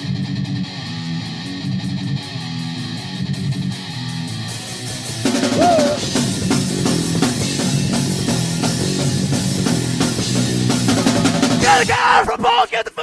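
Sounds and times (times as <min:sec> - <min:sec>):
rock band playing: 0:00.0 - 0:11.9
guitar: 0:00.0 - 0:12.0
drum kit beat: 0:05.0 - 0:12.6.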